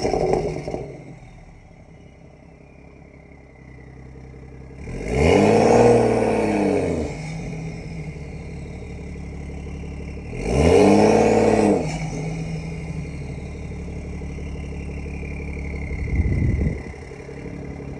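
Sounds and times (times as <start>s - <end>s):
car engine idling: 0.0s - 17.9s.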